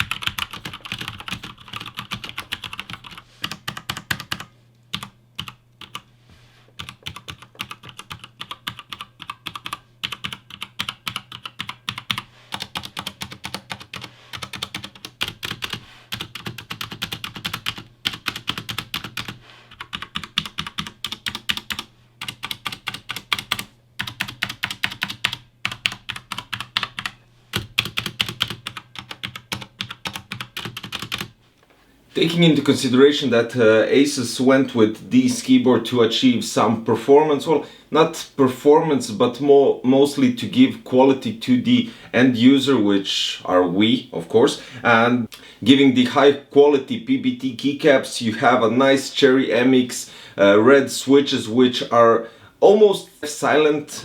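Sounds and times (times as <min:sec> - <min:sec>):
typing on mechanical keyboard: 0:00.0 - 0:06.0, 0:06.8 - 0:31.3.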